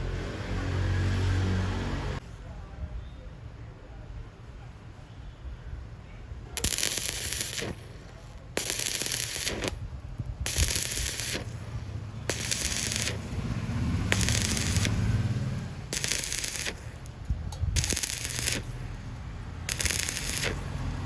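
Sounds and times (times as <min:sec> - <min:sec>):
steady low hum: 0:06.3 - 0:21.0
welding arc crackling: 0:06.6 - 0:21.0.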